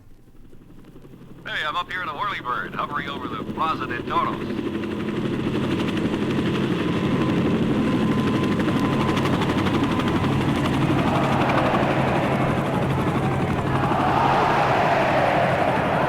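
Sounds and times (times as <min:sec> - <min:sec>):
helicopter rotor chop: 0:00.1 - 0:16.0.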